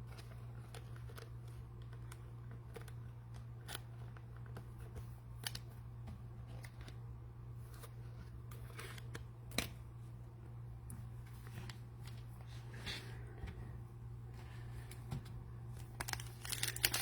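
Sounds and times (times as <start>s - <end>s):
steady low hum: 0.0s - 17.0s
cards and plastic wrappers rustling: 14.4s - 17.0s.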